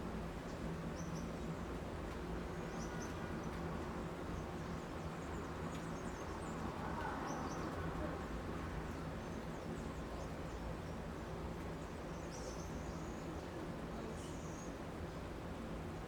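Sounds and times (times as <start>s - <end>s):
faint distant voices: 12.8s - 14.9s.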